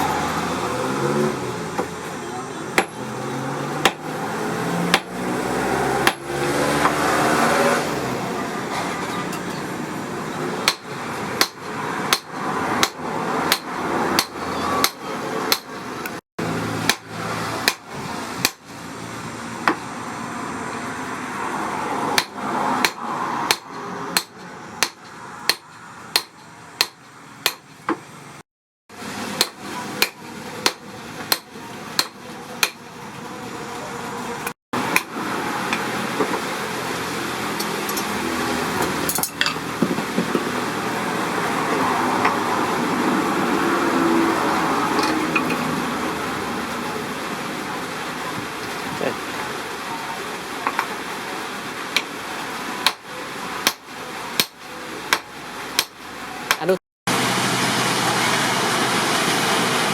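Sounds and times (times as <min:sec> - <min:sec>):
hammer striking metal: 0:02.7 - 0:03.1, 0:03.8 - 0:04.1, 0:04.9 - 0:05.2, 0:06.0 - 0:07.0, 0:10.6 - 0:15.7, 0:16.8 - 0:18.7, 0:22.2 - 0:28.0, 0:29.4 - 0:32.8, 0:52.8 - 0:56.7.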